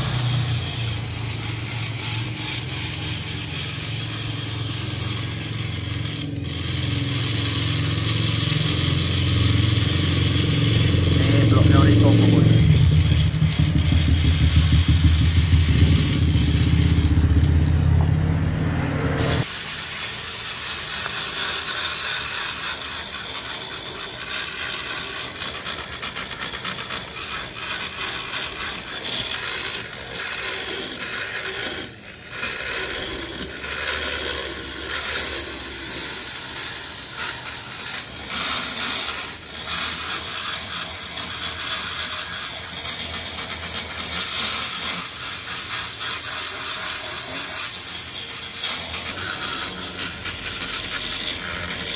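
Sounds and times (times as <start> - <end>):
die grinder grinding metal: 0.0 - 51.9
motorcycle engine idling: 9.8 - 19.4.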